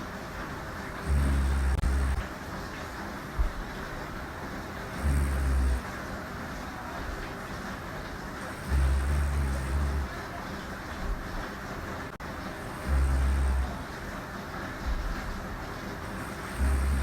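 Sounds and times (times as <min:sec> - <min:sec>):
steady background hiss: 0:00.0 - 0:17.0
woman snoring: 0:00.9 - 0:02.3, 0:04.9 - 0:05.9, 0:08.4 - 0:10.1, 0:12.6 - 0:13.9, 0:16.0 - 0:17.0.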